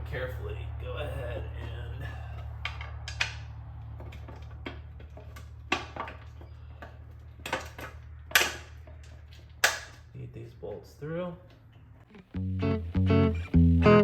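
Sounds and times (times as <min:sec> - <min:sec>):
steady low hum: 0:00.0 - 0:07.4, 0:12.0 - 0:14.0.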